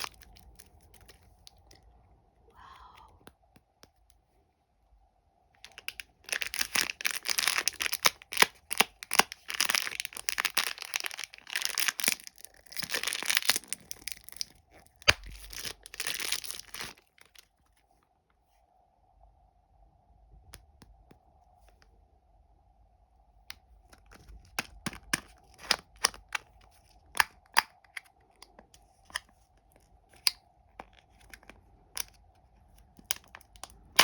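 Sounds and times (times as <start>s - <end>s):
plastic wrapper crinkling: 0.0s - 1.8s, 5.6s - 17.6s.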